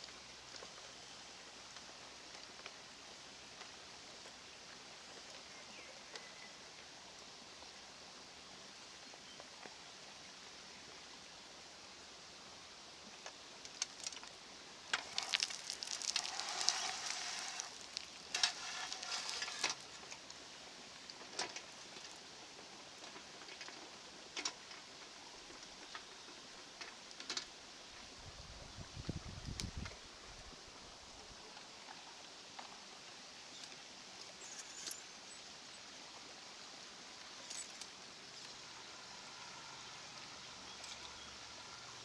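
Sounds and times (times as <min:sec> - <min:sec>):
gravel pouring and scraping: 0:13.6 - 0:20.4
stones clicking: 0:14.9 - 0:19.9.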